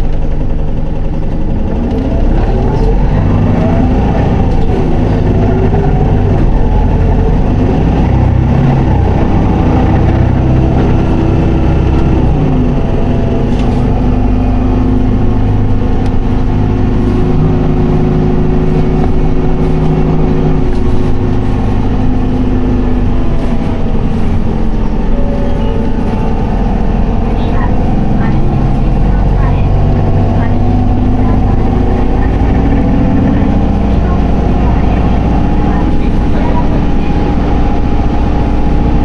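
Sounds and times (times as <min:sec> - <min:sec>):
bus diesel engine running: 0:00.0 - 0:39.0.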